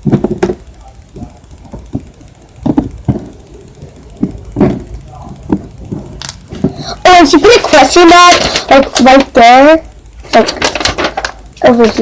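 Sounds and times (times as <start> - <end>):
handling knocks and clicks: 0.0 - 3.5
faint low hum: 0.0 - 12.0.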